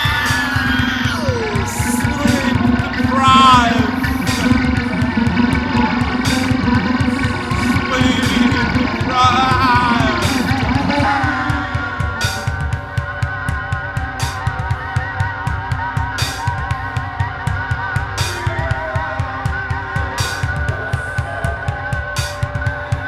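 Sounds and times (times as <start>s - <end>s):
wavering electric guitar: 0.0s - 13.2s
steady drum beat: 0.0s - 23.0s.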